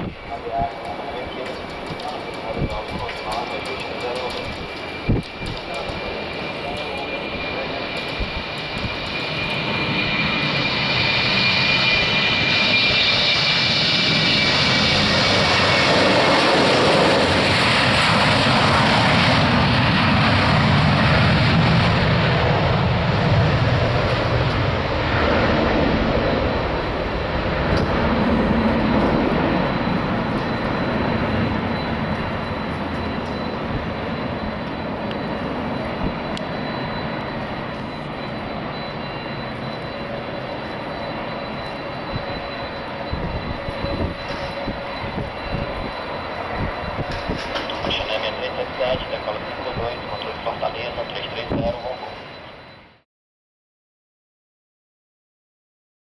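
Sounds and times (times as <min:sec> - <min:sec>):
jet engine rumble: 0:00.0 - 0:52.9
jet engine fan whine: 0:00.0 - 0:53.0.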